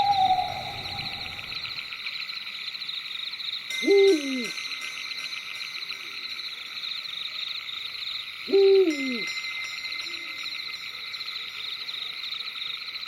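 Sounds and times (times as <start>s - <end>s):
owl hooting: 0.0s - 1.7s
high pulsing night chorus: 0.0s - 1.8s.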